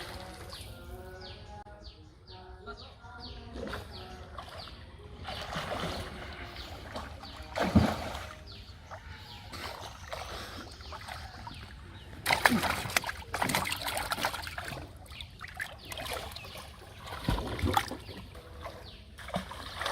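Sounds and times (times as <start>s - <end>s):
water splashing and sloshing: 0.0s - 1.1s, 3.3s - 19.9s.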